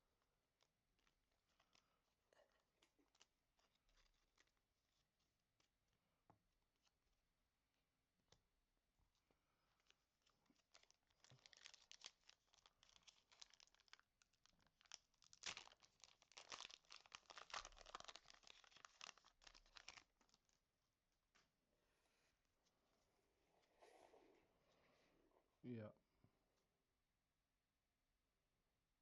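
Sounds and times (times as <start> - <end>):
wrapper crinkling: 9.8 - 20.4.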